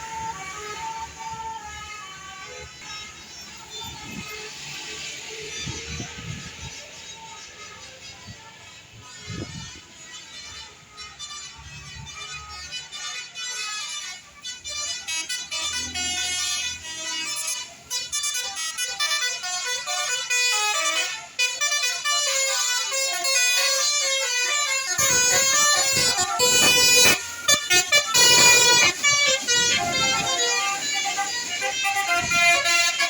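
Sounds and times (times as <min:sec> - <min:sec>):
bus passing close: 0:00.0 - 0:12.7, 0:23.1 - 0:33.0
multi-tone air horn melody: 0:00.0 - 0:33.0.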